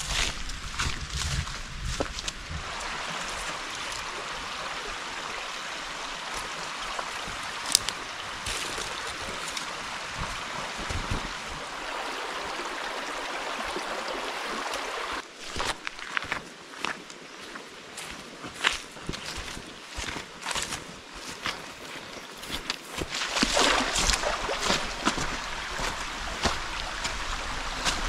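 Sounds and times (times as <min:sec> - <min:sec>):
river stream rushing: 0:02.6 - 0:15.4, 0:23.0 - 0:28.0.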